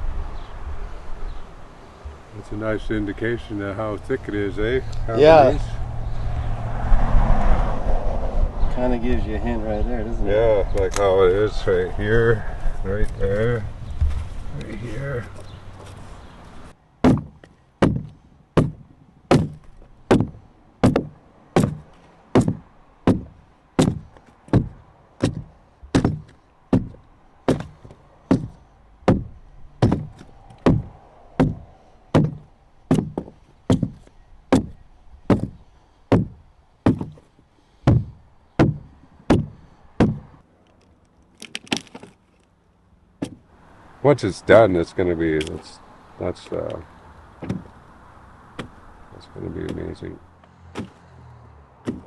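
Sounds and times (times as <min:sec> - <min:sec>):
chopping tool striking wood: 0:17.0 - 0:37.3, 0:37.9 - 0:40.3, 0:47.4 - 0:47.7, 0:50.7 - 0:51.0.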